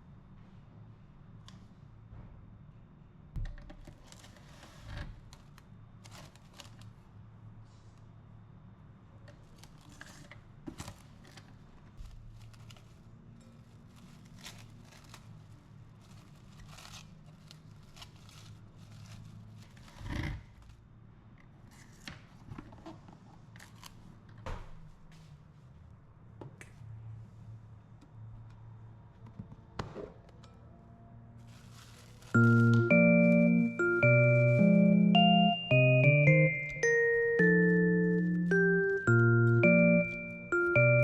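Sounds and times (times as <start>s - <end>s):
soft clicks scrapes and rustles: 9.4s - 20.7s.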